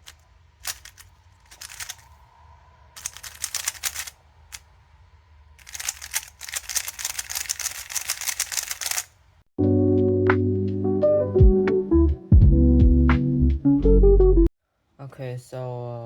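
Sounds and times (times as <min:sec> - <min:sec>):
puzzle cube clacking: 0:00.0 - 0:02.2, 0:03.0 - 0:04.7, 0:05.6 - 0:09.1.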